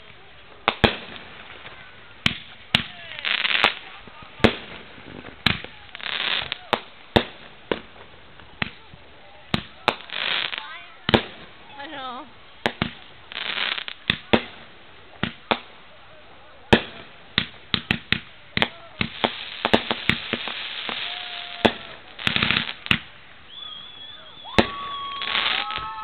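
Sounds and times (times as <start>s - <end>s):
fireworks bangs: 0.0s - 15.9s, 16.6s - 26.0s
fireworks crackling: 0.0s - 26.0s
thin whistling tones: 23.5s - 25.3s.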